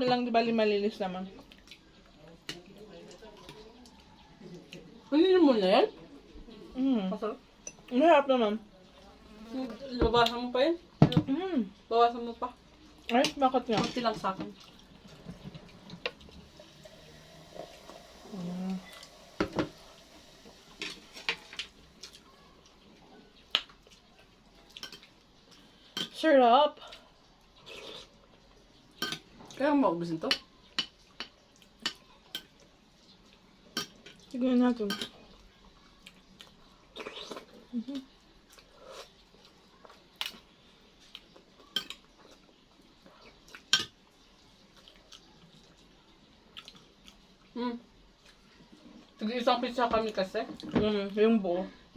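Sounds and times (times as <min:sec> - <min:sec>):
cutlery clinking against dishes: 0:29.0 - 0:29.3, 0:33.7 - 0:34.2, 0:34.8 - 0:35.2, 0:43.7 - 0:44.0.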